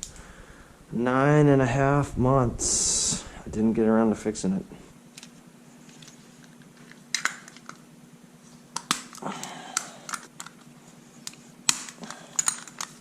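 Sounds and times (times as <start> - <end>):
faint steady hum: 0.0 - 13.0
metallic tool clicks and clinks: 12.1 - 13.0.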